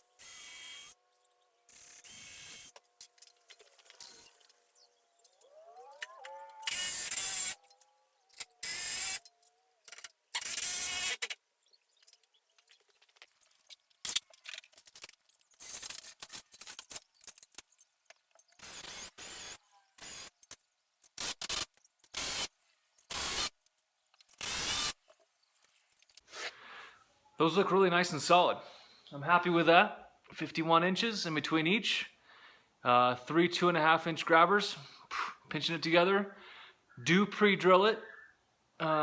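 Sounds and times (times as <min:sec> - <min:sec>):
cordless drill driving screws: 0:01.7 - 0:02.8, 0:06.0 - 0:09.3.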